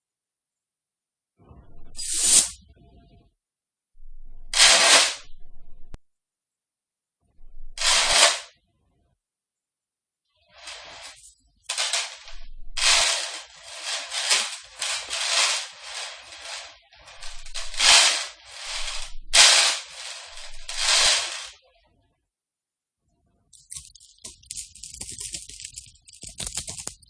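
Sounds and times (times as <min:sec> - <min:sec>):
metal chains rattling: 0:10.6 - 0:21.5, 0:23.6 - 0:27.0.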